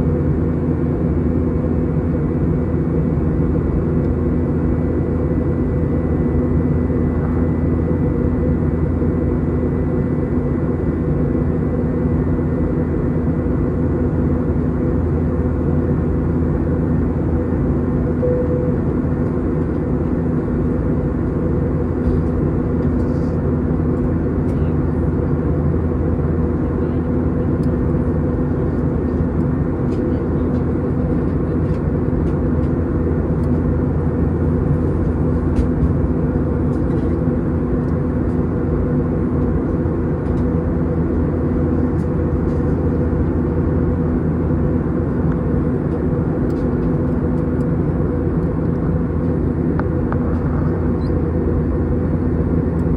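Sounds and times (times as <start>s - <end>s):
jet engine drone: 0.0s - 52.9s
low hum: 16.7s - 25.8s, 44.4s - 52.9s.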